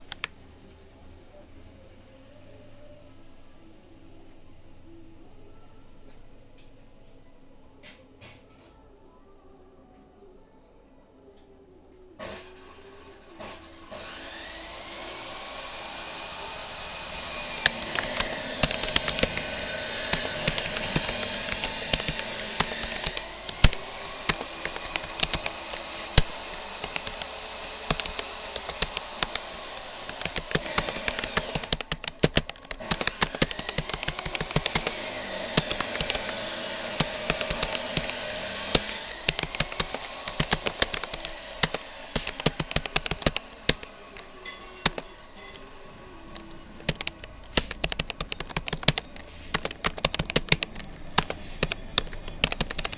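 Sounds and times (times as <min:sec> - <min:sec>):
computer keyboard key clicks: 0:00.0 - 0:00.3, 0:16.8 - 0:45.1, 0:46.3 - 0:52.9
steady rushing hiss: 0:12.2 - 0:52.9.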